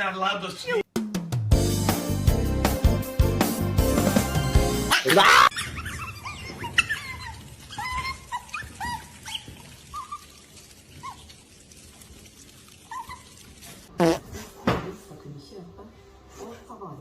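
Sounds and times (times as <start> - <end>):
dog whimpering: 5.3 - 10.4.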